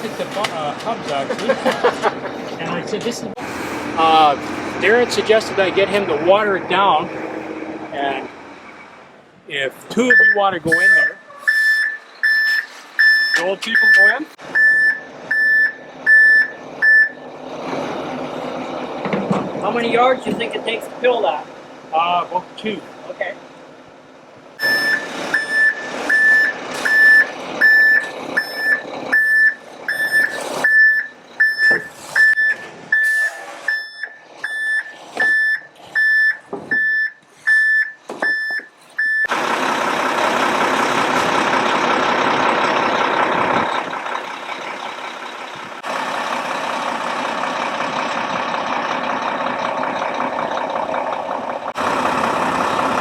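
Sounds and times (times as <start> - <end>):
diesel engine rumble: 0.0 - 53.0
truck reversing alarm beeping: 10.0 - 17.4, 24.6 - 50.9.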